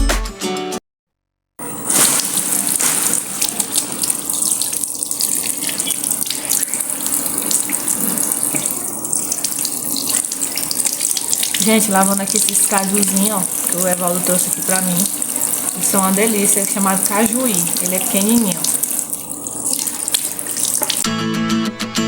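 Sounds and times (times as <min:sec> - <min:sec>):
music: 0:00.0 - 0:00.8, 0:21.0 - 0:22.0
tap running into sink: 0:02.0 - 0:16.0, 0:16.6 - 0:21.0.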